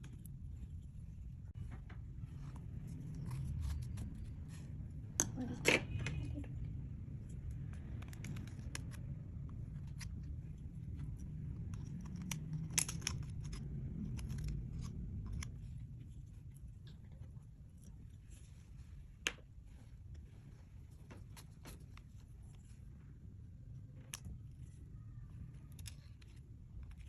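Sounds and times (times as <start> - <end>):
low hum: 0.0 - 27.0.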